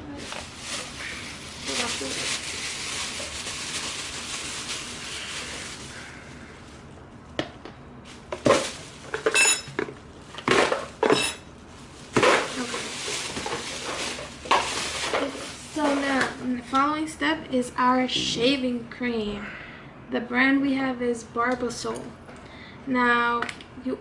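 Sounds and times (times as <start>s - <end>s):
bowls and utensils clinking: 9.1s - 9.9s, 11.0s - 11.5s.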